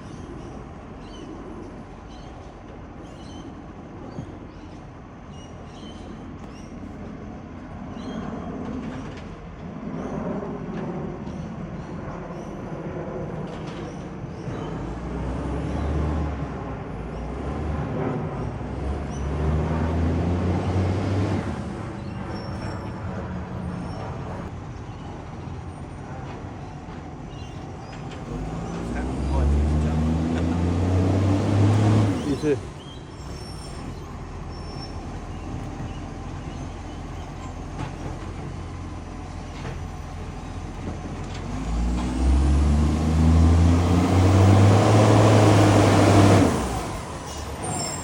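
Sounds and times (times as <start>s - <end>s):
diesel engine with exhaust leak: 13.8s - 48.0s.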